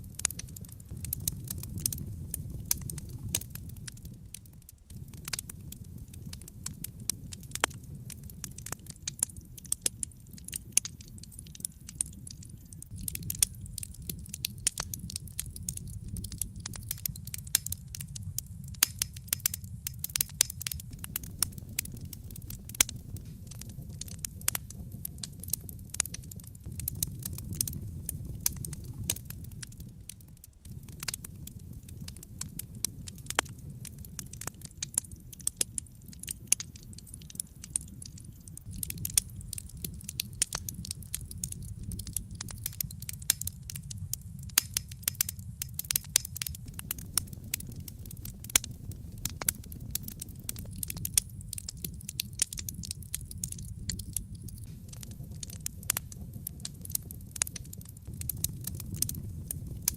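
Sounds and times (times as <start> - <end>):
low rumble of flames: 0.0 - 59.9
wood fire crackling and popping: 0.0 - 59.9.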